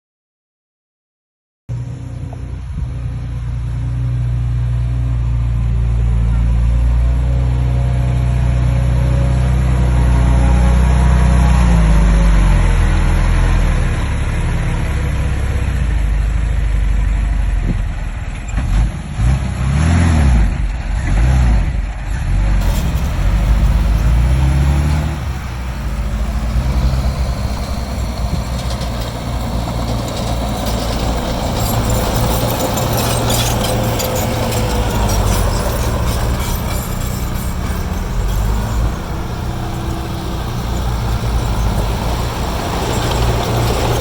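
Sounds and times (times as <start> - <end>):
diesel machinery engine revving: 1.8 - 44.0.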